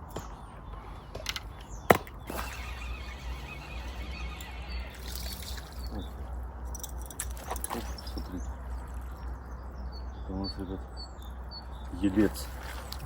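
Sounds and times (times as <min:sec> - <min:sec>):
water trickling and splashing: 0:02.0 - 0:10.0, 0:11.2 - 0:13.0.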